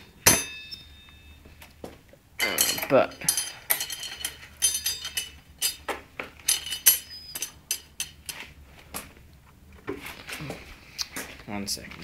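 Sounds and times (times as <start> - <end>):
metal parts clinking: 2.4 - 8.4.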